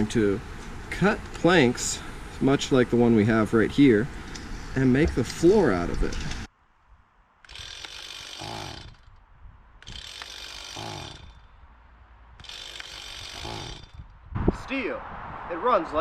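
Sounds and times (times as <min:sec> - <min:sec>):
power tool running: 0:07.5 - 0:09.1, 0:09.8 - 0:11.5, 0:12.4 - 0:14.1.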